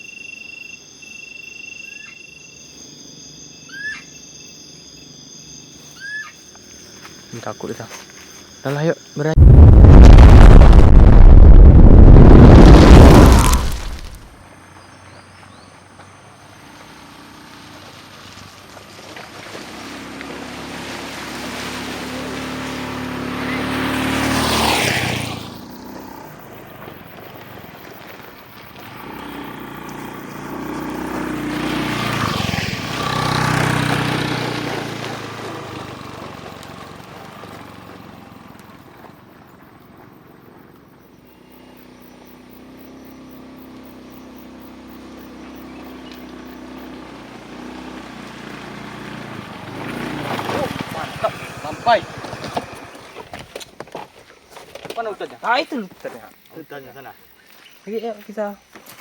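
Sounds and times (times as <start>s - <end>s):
road noise: 2.7s - 59.0s
vehicles passing by: 9.3s - 53.6s
motorcycle engine running: 16.5s - 53.5s.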